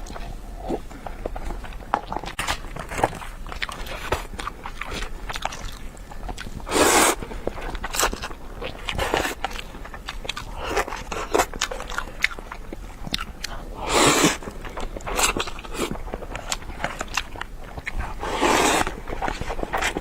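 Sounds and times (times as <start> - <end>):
person chewing noodles: 0.0 - 20.0
noodle slurps: 6.7 - 7.2, 13.8 - 14.4, 18.1 - 20.0.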